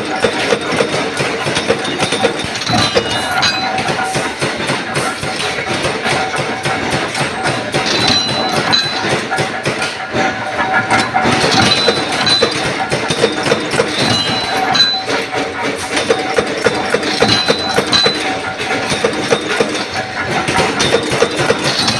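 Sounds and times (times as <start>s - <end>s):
power press clattering: 0.0s - 21.9s
high ringing tone: 8.0s - 9.2s, 11.6s - 12.7s, 14.0s - 15.3s.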